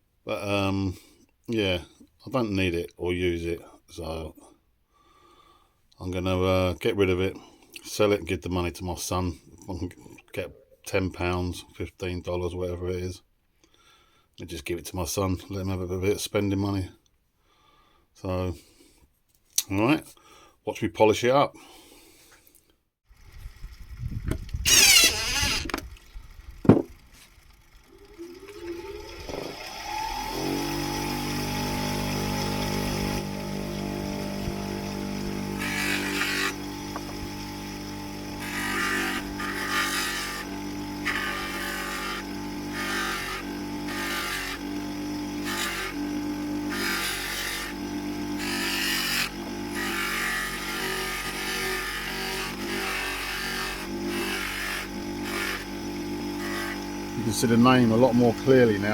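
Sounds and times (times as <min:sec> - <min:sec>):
electric polishing motor humming: 0:24.7 - 0:25.8, 0:27.8 - 0:58.9
handling knocks: 0:26.6 - 0:27.0.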